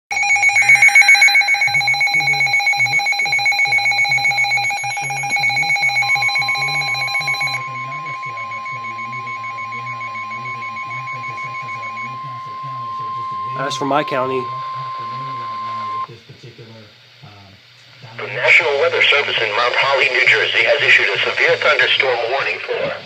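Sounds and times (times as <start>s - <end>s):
pulsing multi-tone alarm: 0.1s - 16.1s
steady single-pitch alert tone: 0.1s - 16.1s.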